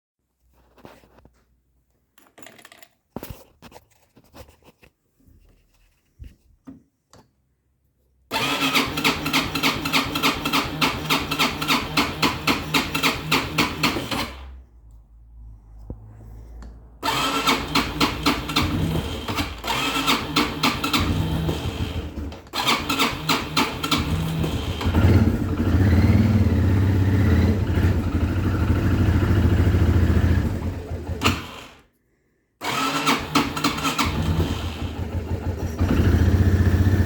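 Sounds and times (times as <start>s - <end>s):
engine cranking on starter: 8.3s - 14.6s, 17.0s - 31.8s, 32.6s - 37.0s.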